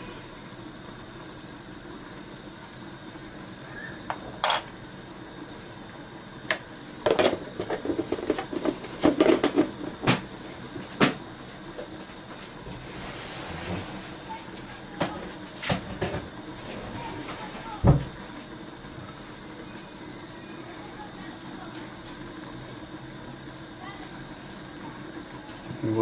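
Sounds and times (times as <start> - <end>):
metal spoon clinking on pot: 4.4 - 4.9.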